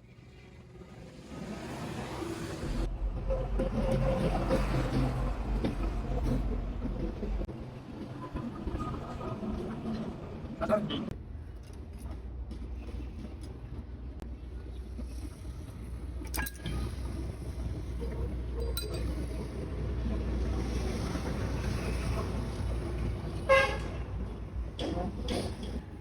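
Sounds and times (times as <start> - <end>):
sharp metallic clinks: 18.6 - 19.5
vehicle horn toot: 23.5 - 23.8.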